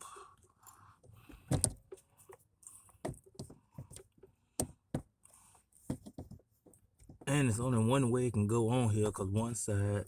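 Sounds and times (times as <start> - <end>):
sharp clicks and knocks: 1.2 - 2.0.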